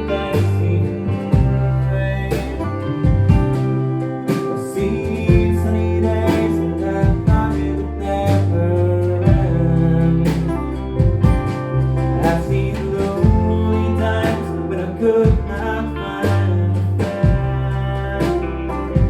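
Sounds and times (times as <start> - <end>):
guitars: 0.0 - 19.0
stepping bass line: 0.0 - 19.0
sharp beat: 0.4 - 8.6, 10.3 - 19.0.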